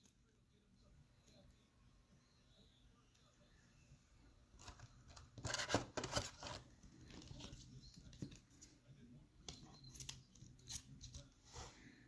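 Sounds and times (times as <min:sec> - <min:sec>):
card packaging rustling: 0:04.6 - 0:08.3.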